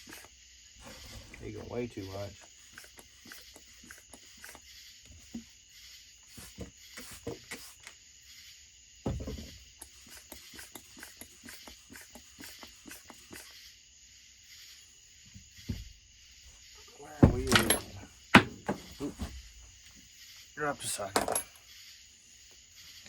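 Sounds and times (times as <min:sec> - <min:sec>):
tools clicking and knocking: 0:17.2 - 0:19.0, 0:21.1 - 0:21.6
heavy thump: 0:17.2 - 0:19.4.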